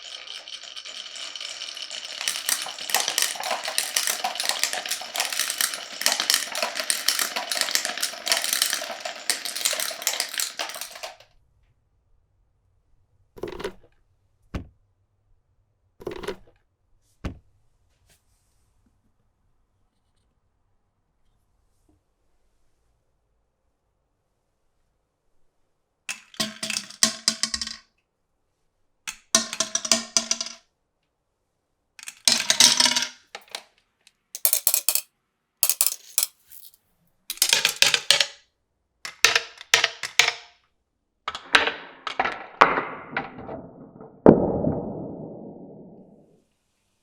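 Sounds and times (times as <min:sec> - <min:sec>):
marbles clattering on track: 0:00.0 - 0:11.2, 0:26.1 - 0:27.8, 0:29.1 - 0:30.6, 0:32.0 - 0:33.7, 0:34.4 - 0:38.4, 0:39.1 - 0:40.5, 0:41.3 - 0:46.2
marbles rolling rumble: 0:00.0 - 0:11.2, 0:32.0 - 0:33.6, 0:34.4 - 0:35.0, 0:35.6 - 0:38.3, 0:41.3 - 0:46.3.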